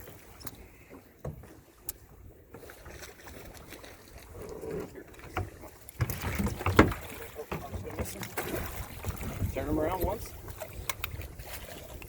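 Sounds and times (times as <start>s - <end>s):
knocking on a boat: 6.0s - 8.2s.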